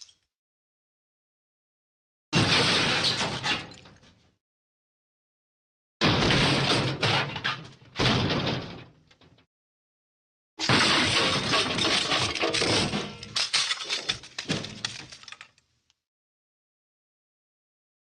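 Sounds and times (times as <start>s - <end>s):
glass breaking and debris tumbling: 10.6s - 15.6s.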